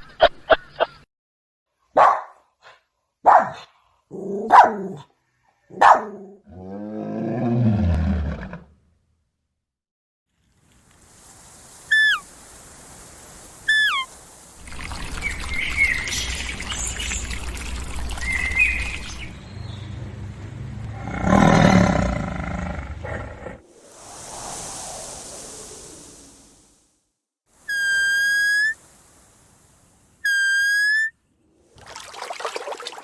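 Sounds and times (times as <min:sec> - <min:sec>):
outdoor noise: 0:01.7 - 0:09.7, 0:10.3 - 0:33.0
birds whistled calls: 0:11.9 - 0:12.2, 0:13.7 - 0:14.1, 0:14.9 - 0:19.8, 0:27.7 - 0:28.8, 0:30.2 - 0:31.1
bird chirps: 0:14.9 - 0:20.0.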